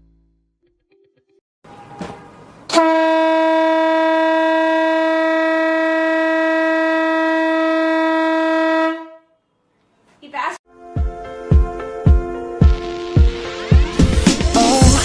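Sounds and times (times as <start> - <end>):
air horn blast: 1.7 - 9.4.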